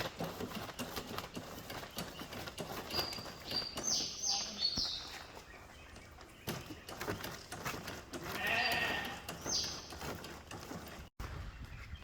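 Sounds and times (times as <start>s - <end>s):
sheep bleating: 8.3s - 9.3s.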